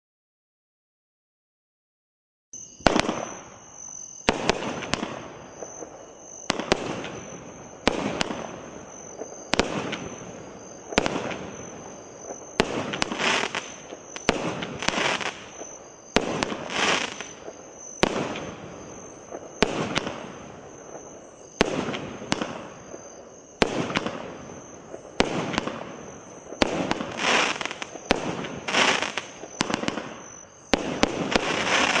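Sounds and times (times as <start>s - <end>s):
firework shots banging: 2.8s - 3.5s, 4.2s - 32.0s.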